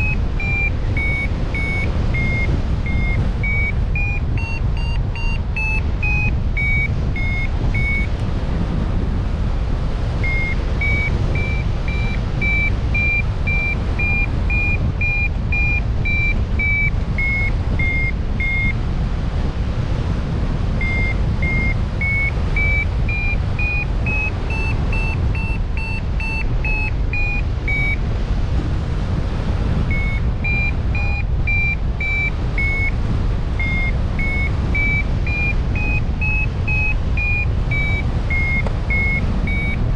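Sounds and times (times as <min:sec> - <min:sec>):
short beeping notes: 0:00.0 - 0:08.1, 0:20.8 - 0:28.0, 0:29.9 - 0:32.9, 0:33.6 - 0:39.8
steady low rumble: 0:00.0 - 0:39.9.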